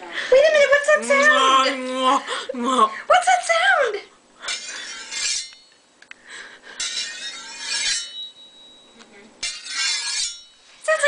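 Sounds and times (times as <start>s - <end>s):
steel blade scraping on steel: 4.4s - 5.8s, 6.7s - 10.7s.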